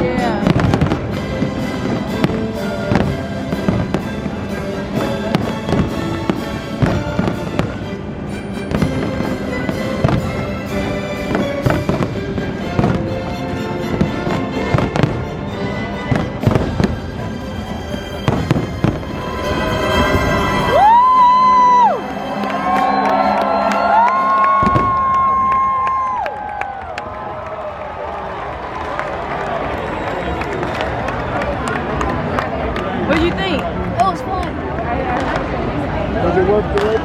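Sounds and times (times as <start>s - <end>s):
fireworks bangs and crackles: 0.0s - 22.0s, 23.9s - 27.7s, 28.4s - 37.0s
music playing: 0.0s - 26.2s.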